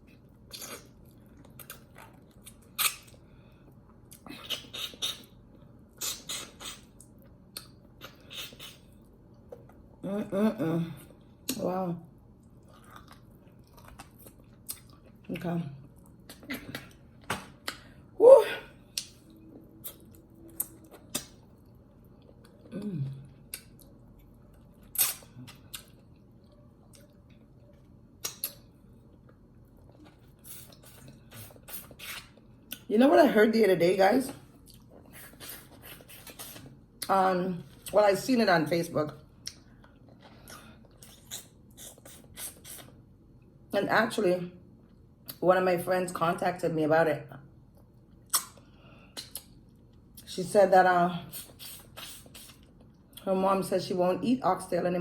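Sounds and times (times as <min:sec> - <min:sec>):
wet chewing and lip-smacking: 0:00.1 - 0:09.9, 0:12.4 - 0:15.3, 0:18.9 - 0:32.9, 0:34.4 - 0:37.1, 0:39.4 - 0:43.0, 0:47.7 - 0:50.3, 0:51.4 - 0:53.2
mouth smacks and bites: 0:48.3 - 0:48.6.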